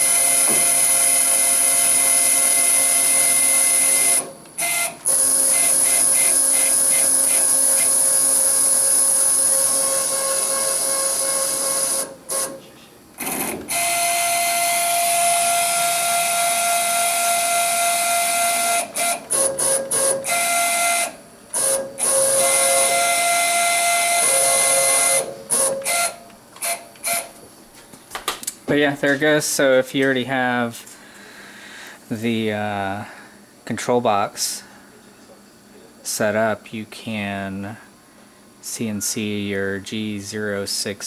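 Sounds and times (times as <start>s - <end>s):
stepper motor whine: 0.0s - 12.5s, 13.2s - 27.3s.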